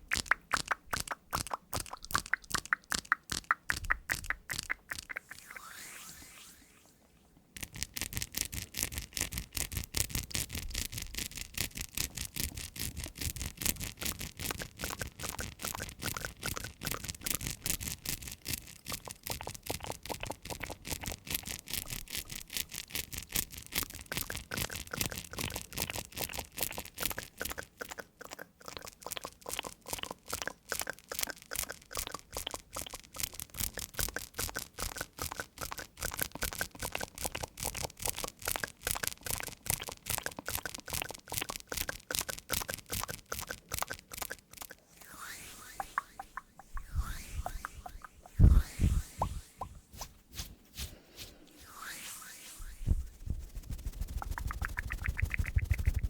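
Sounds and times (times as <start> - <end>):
brush scrubbing strokes: 5.2 - 7.2, 43.4 - 56.0.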